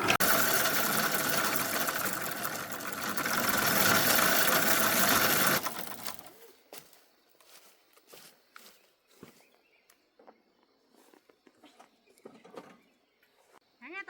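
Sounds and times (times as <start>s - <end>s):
engine running loudly: 0.0s - 5.9s.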